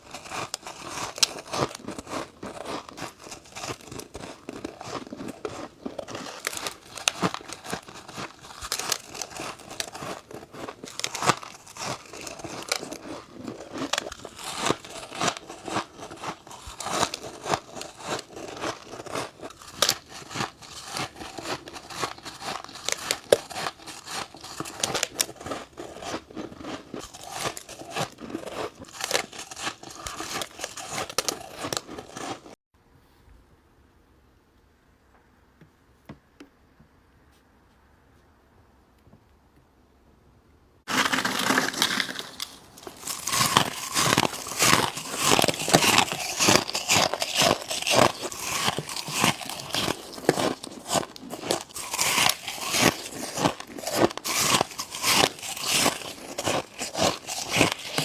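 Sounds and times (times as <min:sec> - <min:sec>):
chewing crunchy frost: 0:00.0 - 0:32.6, 0:40.9 - 0:58.0.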